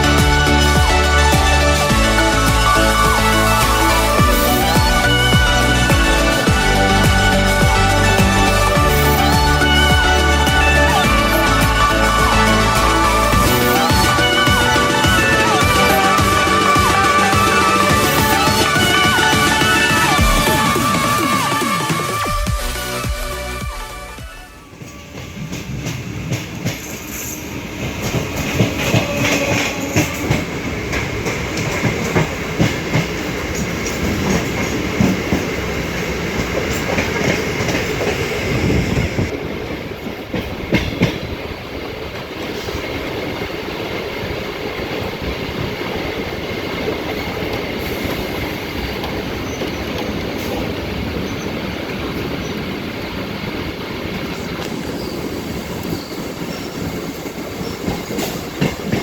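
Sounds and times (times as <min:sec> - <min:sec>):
train rumble: 0:00.0 - 0:59.0
train wheels clacking over rail joints: 0:24.8 - 0:39.4, 0:40.0 - 0:59.0.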